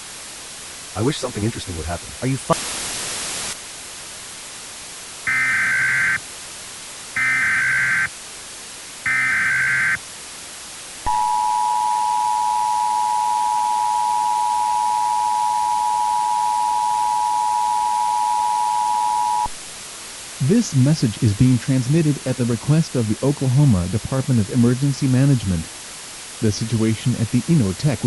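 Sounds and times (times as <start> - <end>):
radio static hiss: 0.0 - 28.0
two-tone attention signal: 5.3 - 6.2, 7.2 - 8.1, 9.1 - 10.0, 11.1 - 19.5
warbling data tone bursts: 5.3 - 6.2, 7.2 - 8.1, 9.1 - 10.0, 11.1 - 19.5.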